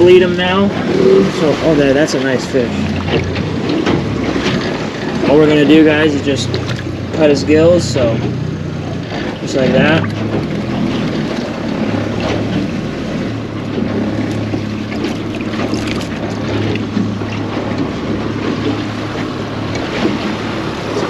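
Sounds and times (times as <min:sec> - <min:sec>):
outboard motor humming: 0:00.0 - 0:21.0
knocks on boat: 0:02.6 - 0:05.5, 0:09.1 - 0:12.8, 0:13.6 - 0:21.0.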